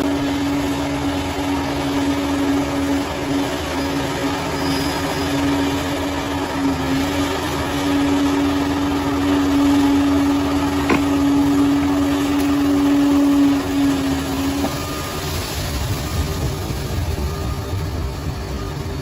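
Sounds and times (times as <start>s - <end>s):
bulldozer engine droning: 0.0s - 19.0s
metal clank: 10.8s - 11.4s.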